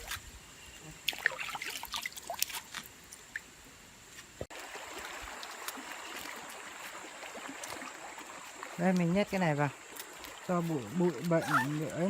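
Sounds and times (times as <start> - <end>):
water trickling and dripping: 1.0 - 3.6, 4.4 - 12.0
stream rushing: 4.5 - 12.0.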